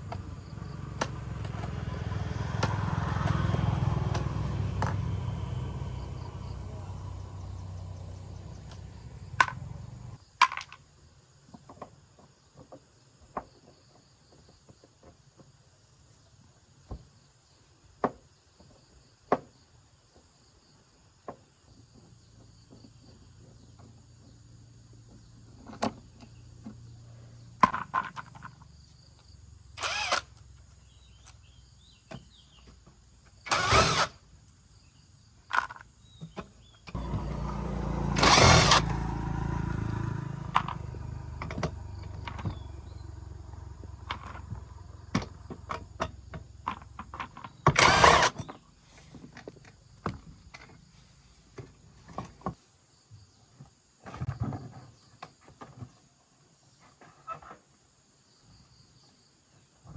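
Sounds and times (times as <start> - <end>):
motor humming: 29.8 - 30.4, 33.5 - 34.2, 37.0 - 43.0, 47.6 - 48.4.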